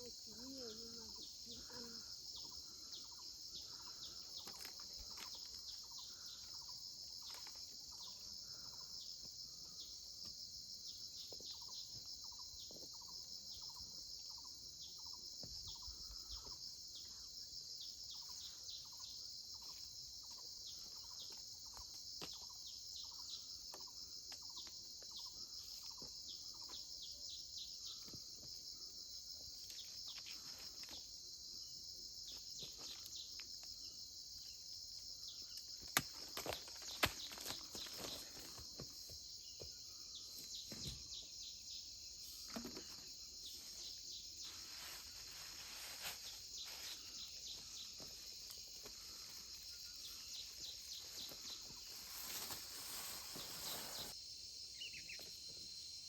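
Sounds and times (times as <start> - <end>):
insects chirring: 0.0 - 56.0
bird chirps: 10.9 - 28.2, 46.5 - 55.3.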